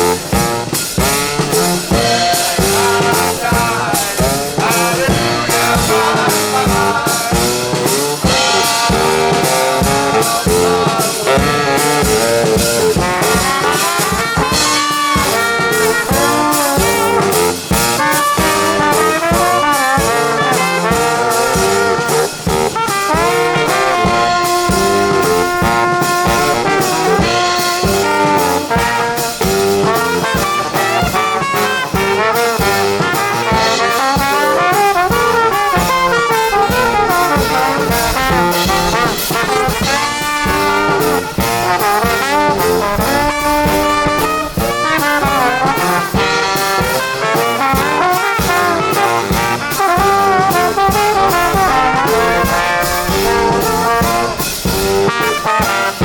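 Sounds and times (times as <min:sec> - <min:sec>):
brass band playing: 0:00.0 - 0:56.0
steady drum beat: 0:00.0 - 0:56.0.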